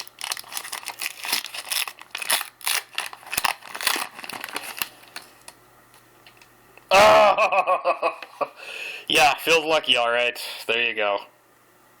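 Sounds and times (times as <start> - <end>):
wrapper crinkling and tearing: 0.0 - 5.6.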